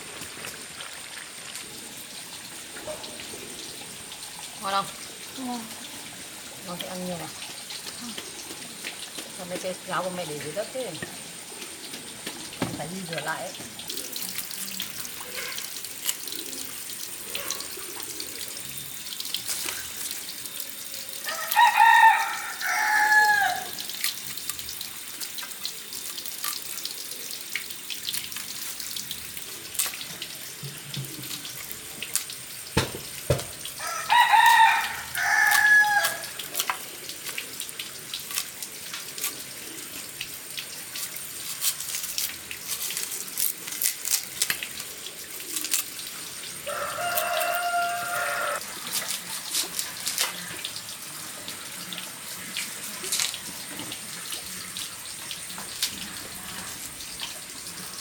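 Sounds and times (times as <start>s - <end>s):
water running from a tap: 0.0s - 58.0s
rooster crowing: 21.2s - 23.9s, 33.8s - 36.4s, 46.6s - 48.6s.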